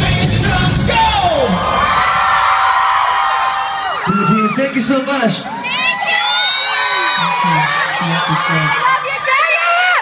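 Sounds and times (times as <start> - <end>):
band music: 0.0 - 1.6
crowd screaming and cheering: 0.0 - 10.0.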